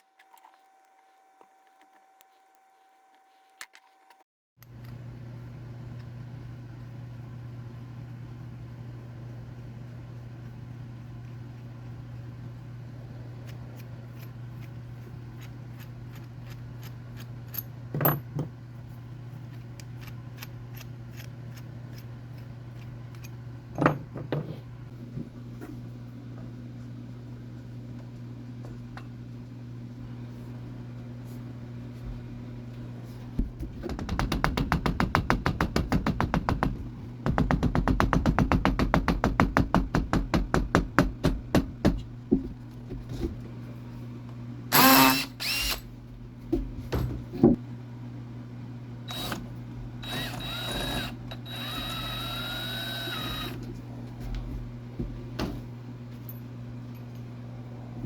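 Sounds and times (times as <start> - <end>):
low electrical hum: 0.0 - 58.0.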